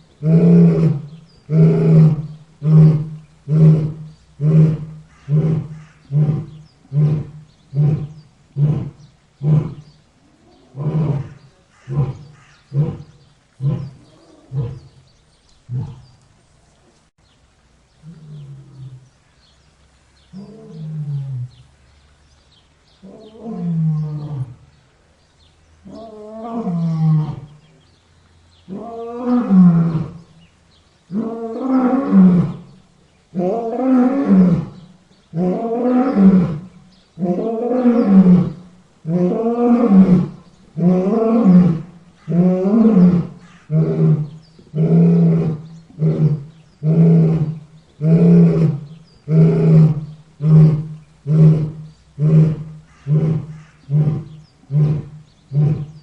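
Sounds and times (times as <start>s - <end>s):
lion roaring and grunting: 0.2s - 9.9s, 10.5s - 15.0s, 15.7s - 16.1s, 35.4s - 56.0s.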